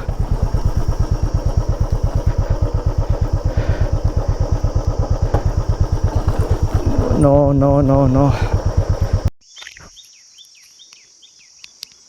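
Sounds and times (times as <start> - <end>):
motorcycle engine thumping: 0.0 - 9.3.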